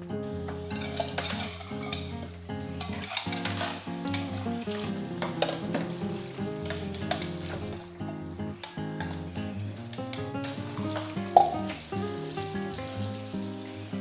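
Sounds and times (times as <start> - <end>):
guitar music: 0.0 - 14.0
food sizzling in a pan: 0.2 - 14.0
utensil clinking against pan: 0.5 - 8.0, 8.6 - 13.0.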